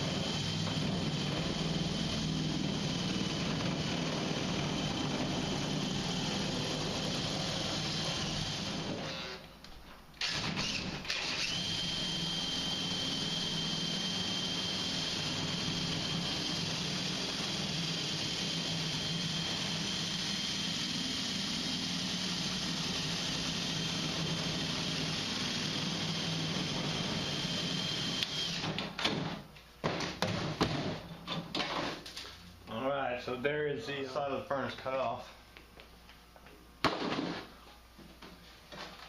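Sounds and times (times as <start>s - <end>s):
power tool cutting sheet metal: 0.0s - 9.4s, 10.2s - 28.8s.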